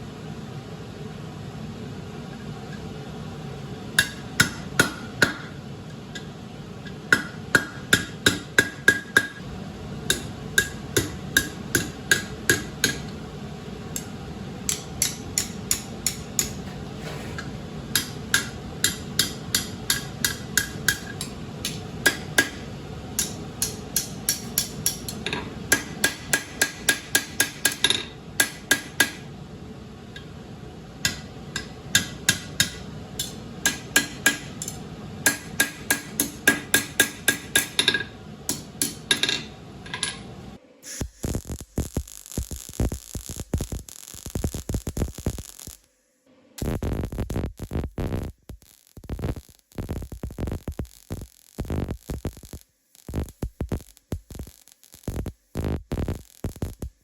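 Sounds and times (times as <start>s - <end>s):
steady background hiss: 0.0s - 47.2s
hammer striking steel on anvil: 4.0s - 5.6s, 6.2s - 9.4s, 10.0s - 13.1s, 14.7s - 16.8s, 17.4s - 29.3s, 31.0s - 40.3s.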